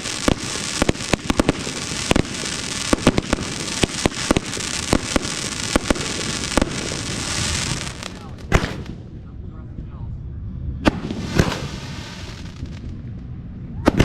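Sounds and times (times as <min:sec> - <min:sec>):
firework shells bursting: 0:00.0 - 0:09.0, 0:10.9 - 0:12.8
fireworks crackle: 0:00.0 - 0:09.0, 0:10.9 - 0:13.2.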